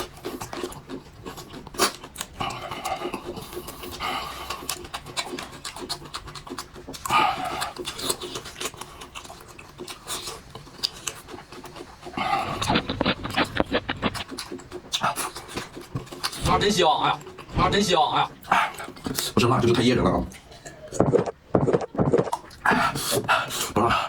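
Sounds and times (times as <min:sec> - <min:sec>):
wet chewing: 0:00.0 - 0:24.0
heavy panting breaths: 0:02.4 - 0:05.0, 0:07.0 - 0:08.2, 0:11.0 - 0:16.6, 0:22.5 - 0:24.0.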